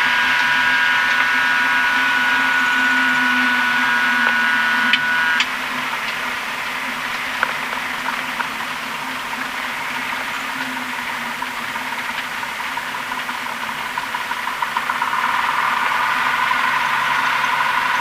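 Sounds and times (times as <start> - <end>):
steady high tone: 0.0 - 6.0
aircraft engine drone: 0.0 - 18.0.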